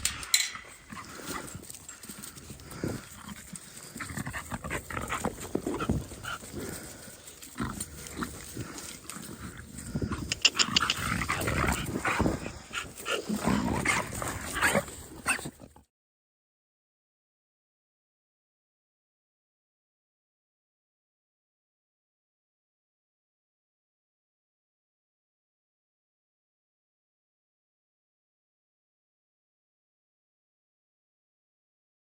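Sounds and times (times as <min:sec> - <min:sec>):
dogs short vocal sounds: 0:00.0 - 0:15.8
dogs scuffling: 0:00.1 - 0:15.7.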